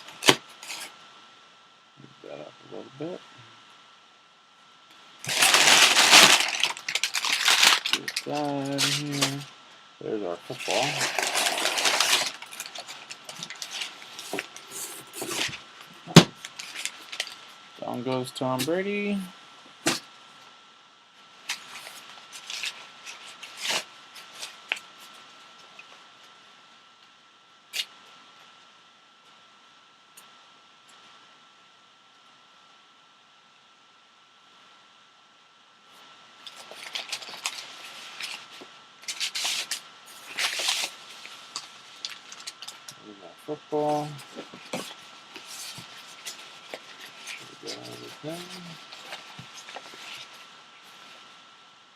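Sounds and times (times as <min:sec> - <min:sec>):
cardboard and plastic rustling: 0:05.2 - 0:09.5, 0:10.4 - 0:17.5, 0:36.4 - 0:43.0, 0:43.6 - 0:51.3.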